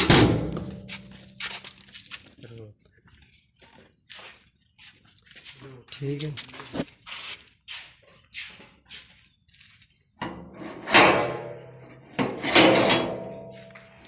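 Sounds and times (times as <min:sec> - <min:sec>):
loud metallic clangs: 0:00.0 - 0:00.7, 0:10.2 - 0:13.6
metal gate lock rattling: 0:12.2 - 0:13.5.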